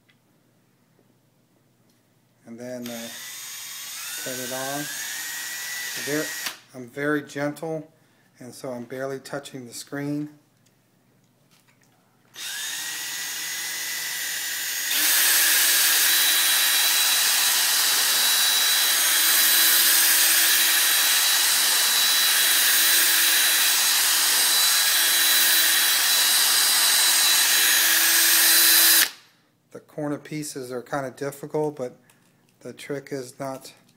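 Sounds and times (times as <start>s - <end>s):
power drill spinning polishing pad: 2.8s - 6.6s, 12.4s - 29.1s.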